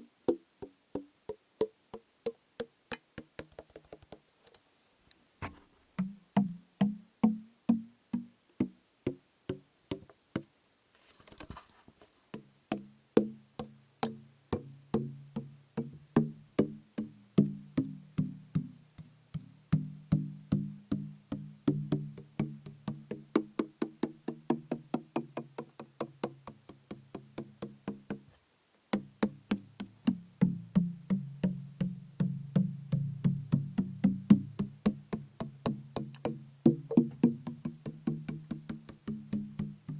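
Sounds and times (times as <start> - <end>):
rustle: 3.6 - 13.3.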